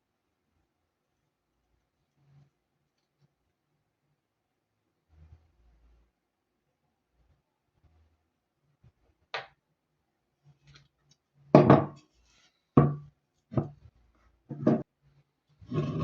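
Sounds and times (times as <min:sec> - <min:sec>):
hard objects knocking and clattering: 0:11.6 - 0:12.0, 0:12.8 - 0:13.9, 0:14.5 - 0:14.9.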